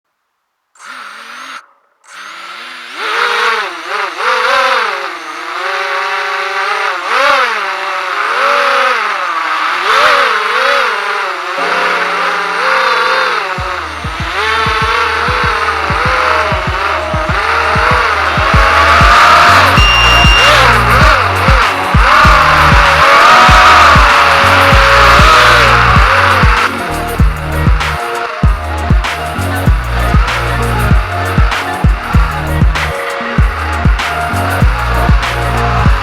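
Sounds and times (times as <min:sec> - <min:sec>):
drone motors whining: 0:00.8 - 0:36.0
music with a steady beat: 0:11.6 - 0:36.0.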